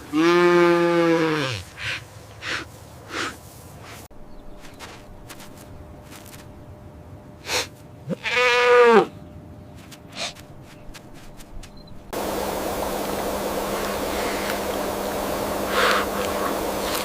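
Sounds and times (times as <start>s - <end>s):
goat or sheep bleating: 8.1s - 9.1s.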